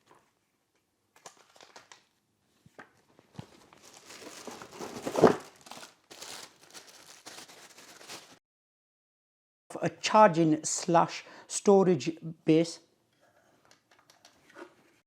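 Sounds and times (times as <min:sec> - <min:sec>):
plastic packaging crinkling: 0:01.2 - 0:02.1, 0:03.3 - 0:08.4.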